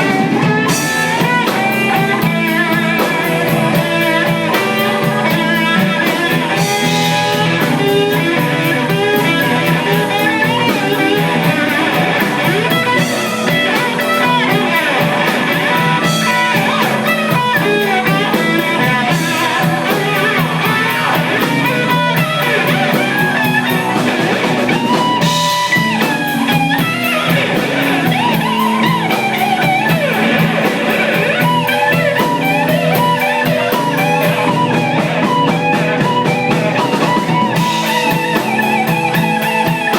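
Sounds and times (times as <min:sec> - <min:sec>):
drum kit beat: 0:00.0 - 0:39.9
lead electric guitar bending notes: 0:00.0 - 0:39.9.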